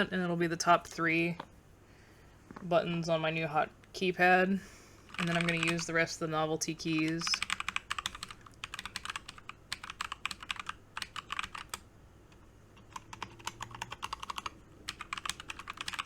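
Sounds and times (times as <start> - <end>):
mechanical keyboard typing: 5.1 - 6.0, 6.8 - 16.0.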